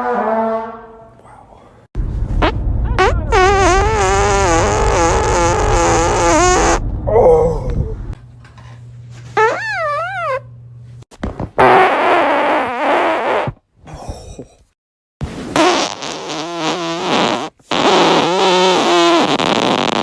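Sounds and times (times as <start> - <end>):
human farts: 2.4 - 6.8, 9.4 - 10.4, 11.2 - 13.6, 15.4 - 20.0.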